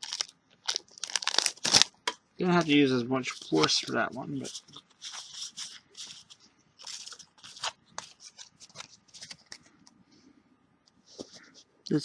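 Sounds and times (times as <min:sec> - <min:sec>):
wrapper tearing and crinkling: 0:00.0 - 0:02.0, 0:06.8 - 0:09.5.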